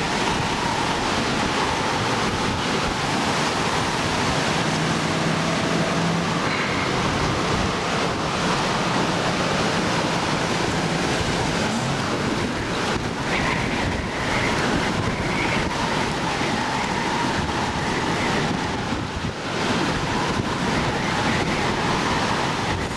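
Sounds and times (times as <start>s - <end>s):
strong wind on microphone: 0.0s - 22.9s.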